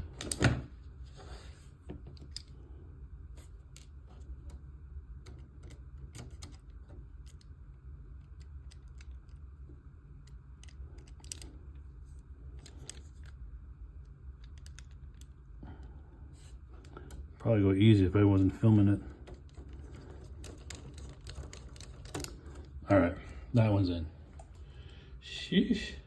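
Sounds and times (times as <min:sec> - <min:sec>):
steady low hum: 0:00.0 - 0:26.0
screwdriver and parts clicking: 0:10.2 - 0:11.6.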